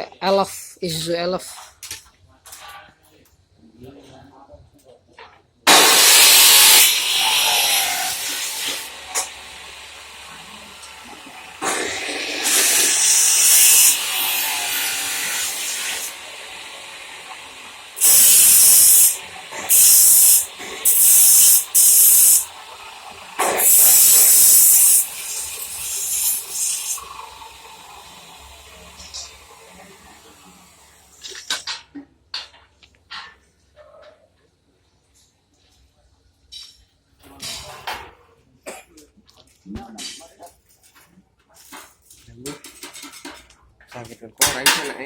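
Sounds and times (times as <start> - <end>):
arc welding hiss: 5.7 - 31.7.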